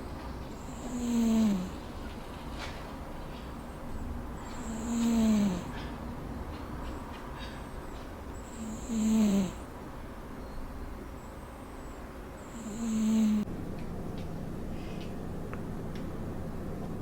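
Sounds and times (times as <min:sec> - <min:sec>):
steady low hum: 0:00.0 - 0:17.0
cat snoring: 0:00.6 - 0:01.9, 0:04.4 - 0:05.9, 0:08.4 - 0:09.7, 0:12.4 - 0:13.5.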